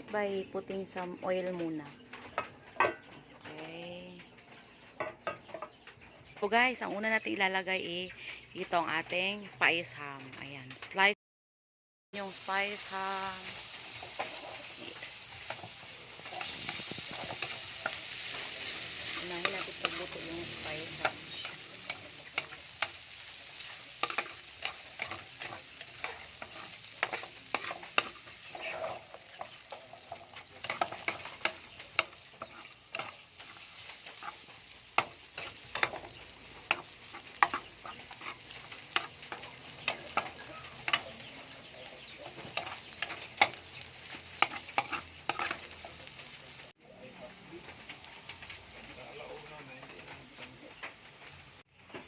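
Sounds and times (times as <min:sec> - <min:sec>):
ham sizzling in hot oil: 0:12.2 - 0:52.0
utensil scraping against pan: 0:13.5 - 0:46.0.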